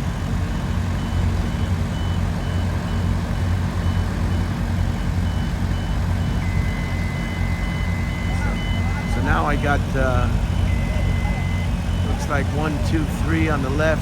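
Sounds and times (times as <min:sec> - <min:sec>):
diesel machinery rumbling: 0:00.0 - 0:14.0
reversing alarm beeping: 0:00.0 - 0:14.0
steady high-pitched tone: 0:06.2 - 0:14.0.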